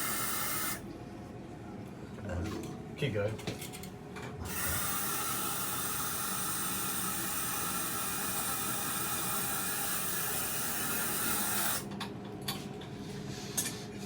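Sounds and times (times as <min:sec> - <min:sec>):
aerosol can hissing: 0:00.0 - 0:00.8, 0:04.5 - 0:11.8.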